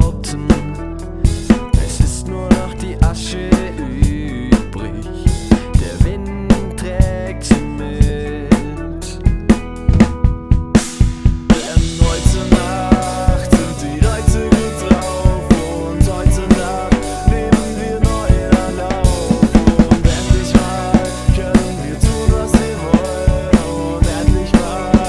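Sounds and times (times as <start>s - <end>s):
backing track of held instruments: 0.0s - 25.0s
drum kit groove: 0.0s - 25.0s.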